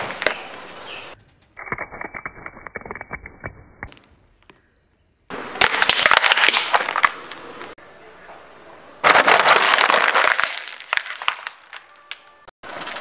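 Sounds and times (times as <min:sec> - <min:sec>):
objects crunching under car tyre: 0:05.6 - 0:07.8, 0:09.0 - 0:13.0.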